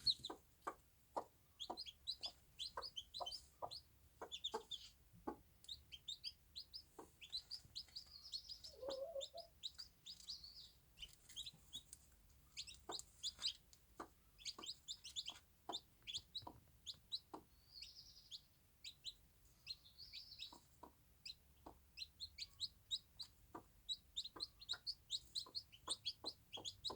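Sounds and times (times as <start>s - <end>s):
chicks peeping: 0.0s - 26.9s
hen clucking low: 8.6s - 9.6s.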